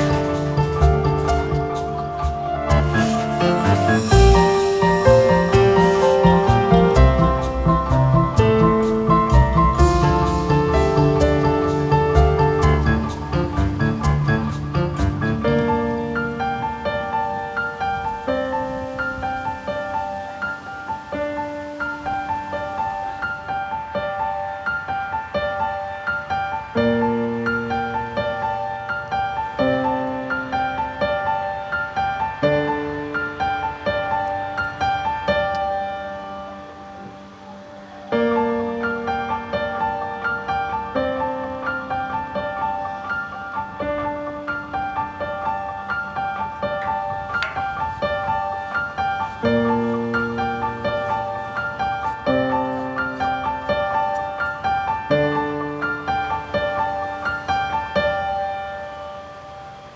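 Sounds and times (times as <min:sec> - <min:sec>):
keyboard music: 0:00.0 - 0:19.7
gentle piano music: 0:00.0 - 0:59.9.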